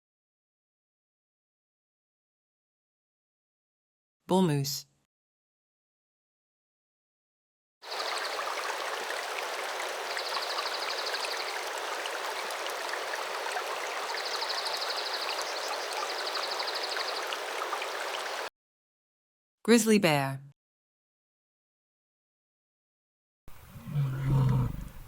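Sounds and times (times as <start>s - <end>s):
stream rushing: 7.8s - 18.5s.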